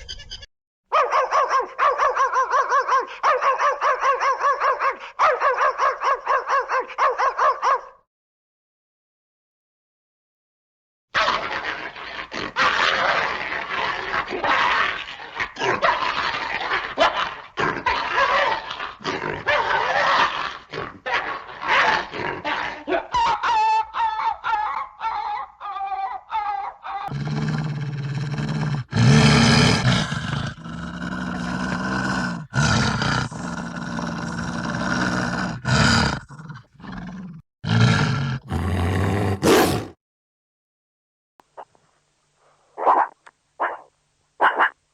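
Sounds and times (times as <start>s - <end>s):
deep animal growls or grunts: 27.1s - 40.0s
rough barking-like animal calls: 42.7s - 44.8s.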